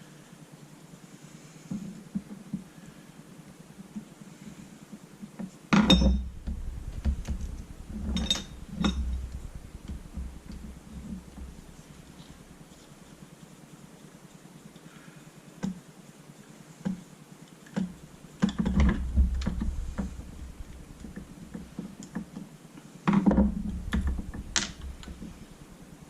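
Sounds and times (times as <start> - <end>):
knocking and rubbing of parts: 4.9 - 13.2, 17.7 - 22.5, 23.1 - 26.0.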